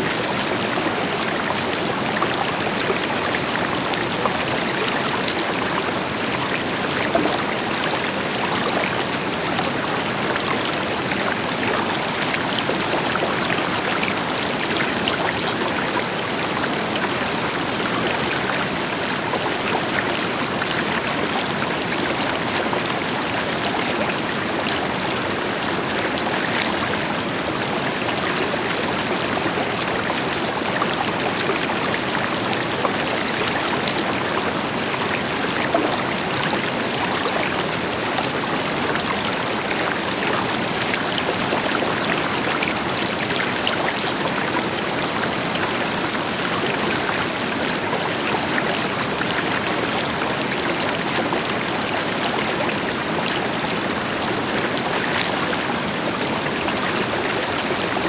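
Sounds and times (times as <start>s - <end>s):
river water flowing over rocks: 0.0s - 58.0s.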